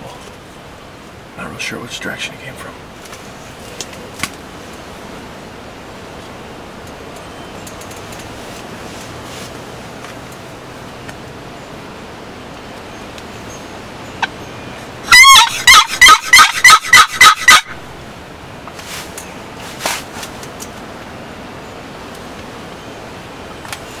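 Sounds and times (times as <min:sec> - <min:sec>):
turkey gobbling: 0:15.1 - 0:17.8.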